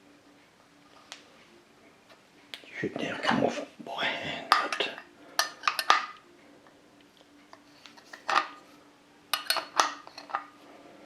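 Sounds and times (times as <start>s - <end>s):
metal parts clicking and clinking: 8.0s - 8.6s, 9.3s - 10.5s.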